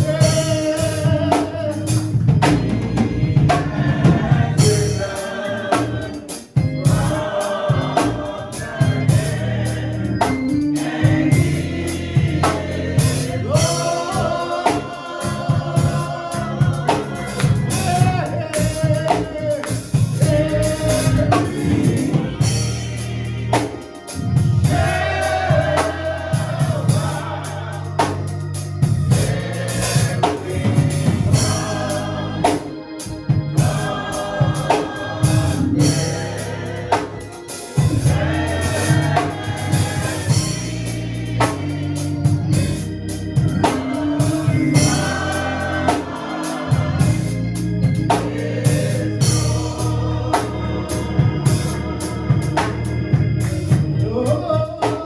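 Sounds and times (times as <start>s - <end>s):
bass: 0.0s - 55.0s
gospel singing: 0.0s - 55.0s
organ: 0.0s - 55.0s
drum hits: 24.4s - 27.4s.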